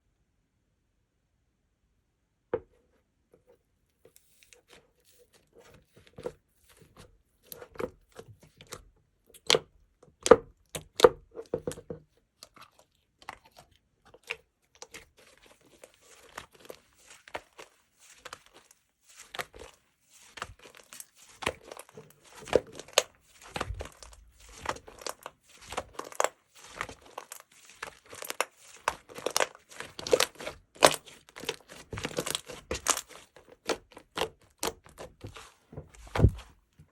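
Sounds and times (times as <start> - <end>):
slime crackling and popping: 14.2 - 36.5.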